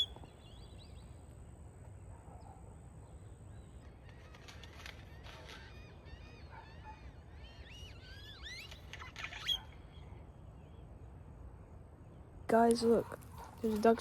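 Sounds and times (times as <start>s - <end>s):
faint outdoor rumble: 0.0s - 14.0s
waterfowl calling: 3.8s - 9.8s.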